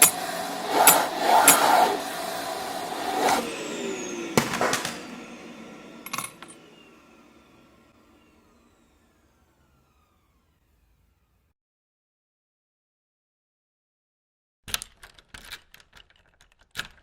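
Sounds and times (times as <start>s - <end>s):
car engine revving: 0.0s - 8.2s
falling whine: 0.0s - 11.1s.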